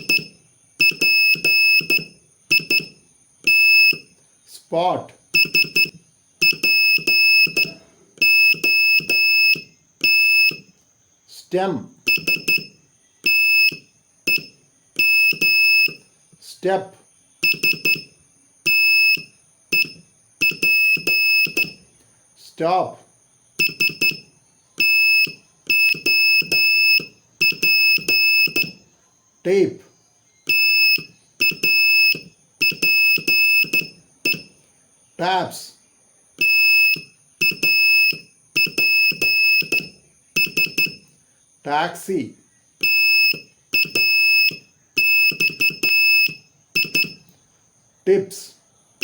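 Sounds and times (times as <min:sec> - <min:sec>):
morse code beeps: 0:00.0 - 0:04.2, 0:05.4 - 0:10.7, 0:12.1 - 0:16.1, 0:17.4 - 0:21.8, 0:23.6 - 0:28.8, 0:30.5 - 0:34.6, 0:36.4 - 0:41.1, 0:42.8 - 0:47.3.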